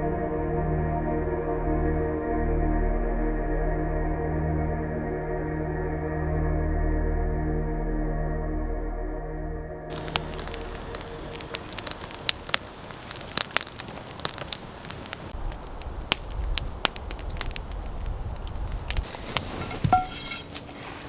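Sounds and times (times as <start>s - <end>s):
campfire crackling and popping: 9.9s - 21.0s.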